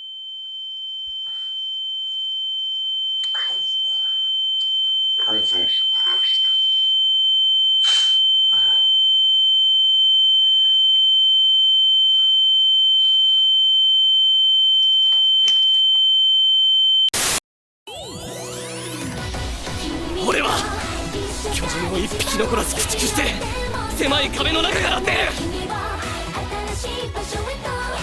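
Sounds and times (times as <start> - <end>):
high-pitched electronic tone: 17.9 - 25.5.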